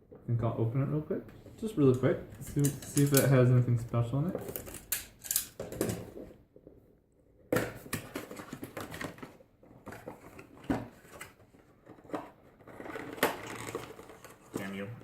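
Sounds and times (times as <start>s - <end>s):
packaging rustling and clicking: 7.6s - 14.8s.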